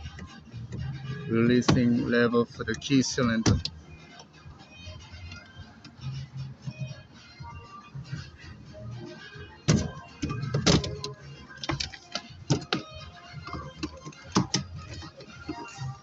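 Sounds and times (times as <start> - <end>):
background music: 0.0 - 16.0
metal latch clicks and knocks: 9.7 - 15.6.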